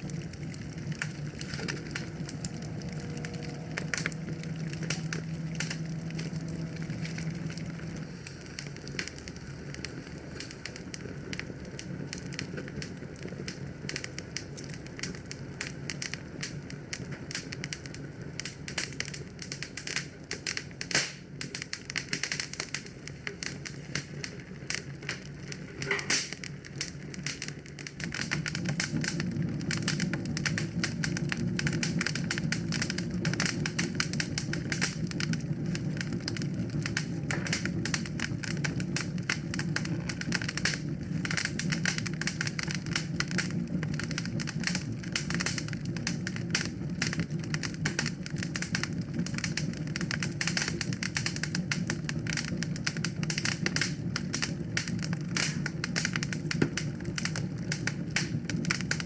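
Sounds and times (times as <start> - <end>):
low steady rumble: 0.0 - 15.6
wood fire crackling: 0.0 - 59.0.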